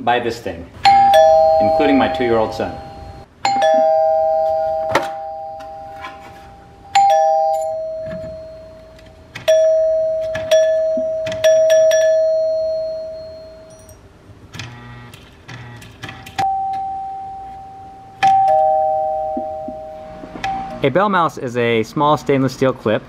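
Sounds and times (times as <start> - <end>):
mechanical doorbell ding-dong chime: 0.8 - 14.0, 16.4 - 20.8.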